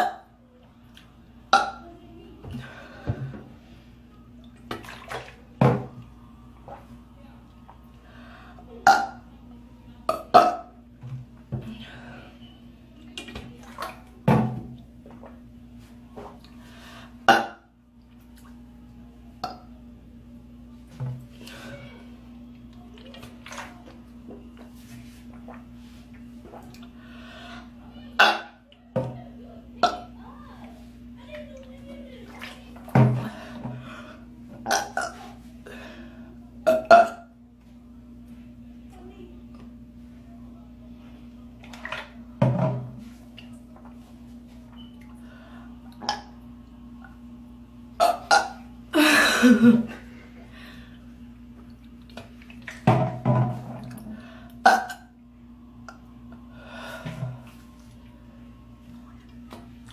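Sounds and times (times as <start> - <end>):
woman burping: 1.5 - 1.8, 8.8 - 9.2, 34.7 - 35.2, 48.0 - 50.0, 54.6 - 55.1.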